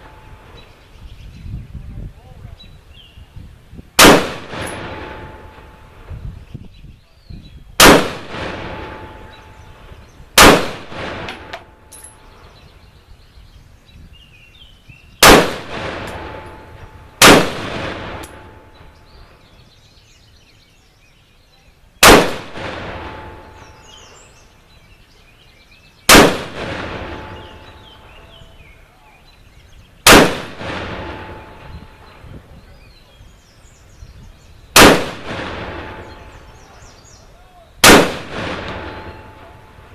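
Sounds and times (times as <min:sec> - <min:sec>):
rifle gunshots with echo: 0:04.0 - 0:06.0, 0:07.8 - 0:11.8, 0:15.2 - 0:19.0, 0:22.0 - 0:24.1, 0:26.1 - 0:28.4, 0:30.0 - 0:32.2, 0:34.8 - 0:36.8, 0:37.8 - 0:39.9.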